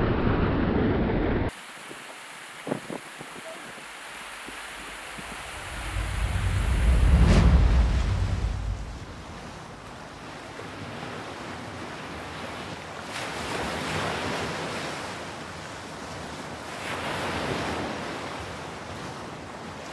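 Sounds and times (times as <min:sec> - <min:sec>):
sea waves washing: 0:01.5 - 0:11.8
wind noise on microphone: 0:01.8 - 0:10.2.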